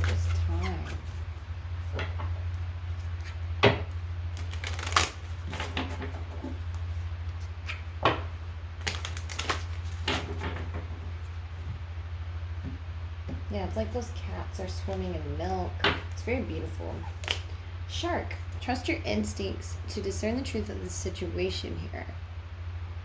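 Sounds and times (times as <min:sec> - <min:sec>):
cards being shuffled: 0:00.0 - 0:10.9, 0:17.0 - 0:17.6
steady low hum: 0:00.0 - 0:23.0
cards tapping and slapping: 0:03.2 - 0:10.8.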